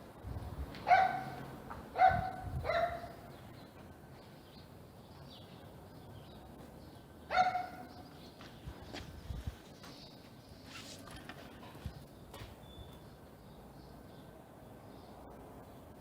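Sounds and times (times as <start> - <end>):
dog barking: 0.9 - 1.4, 2.0 - 3.2, 7.3 - 8.0.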